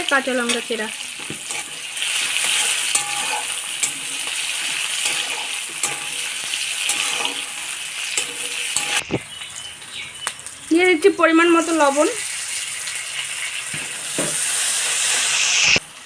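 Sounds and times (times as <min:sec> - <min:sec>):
vegetables sizzling in oil: 0:00.0 - 0:16.0
spatula scraping a pan: 0:00.4 - 0:09.2, 0:12.5 - 0:15.8.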